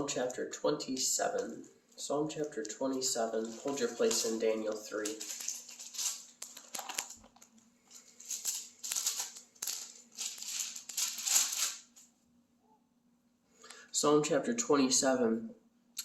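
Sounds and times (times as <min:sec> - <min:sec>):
paper pages rustling: 0:02.4 - 0:12.1.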